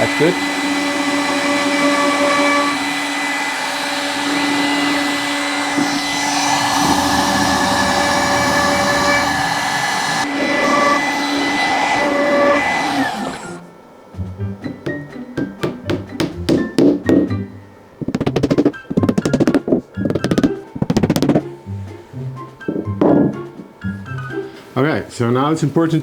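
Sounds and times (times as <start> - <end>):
dust extraction suction: 0.0 - 13.7, 16.1 - 23.5
router cutting plywood: 0.0 - 13.7
router spindle whining: 0.0 - 14.0.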